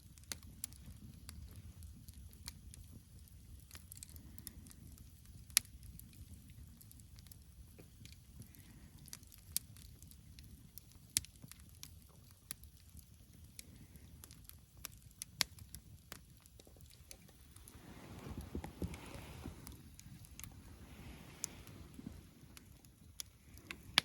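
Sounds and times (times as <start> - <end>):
campfire crackling and popping: 0.0 - 24.0
rushing rustling noise: 17.4 - 22.4.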